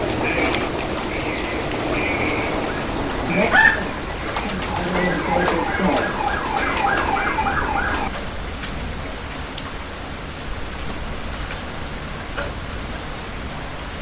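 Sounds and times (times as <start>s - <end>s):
siren yelping: 0.0s - 8.1s
heavy rain falling: 0.0s - 14.0s.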